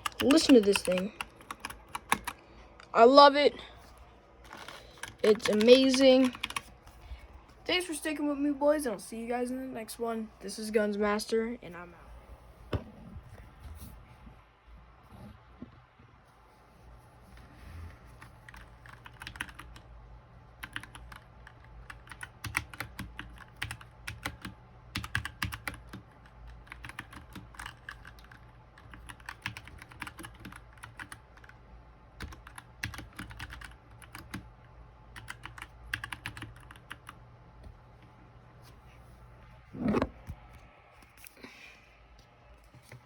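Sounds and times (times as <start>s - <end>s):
mechanical keyboard typing: 0.0s - 2.4s, 4.5s - 6.7s, 18.2s - 19.9s, 20.6s - 31.6s, 32.2s - 34.5s, 35.1s - 37.2s.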